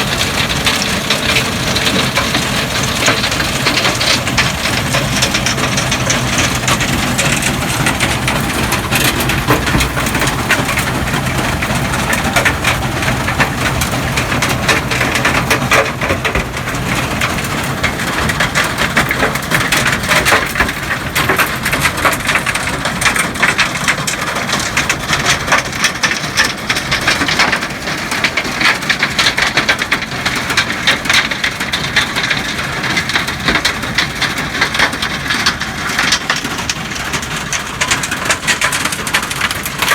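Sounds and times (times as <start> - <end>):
low engine hum: 0.0 - 23.7.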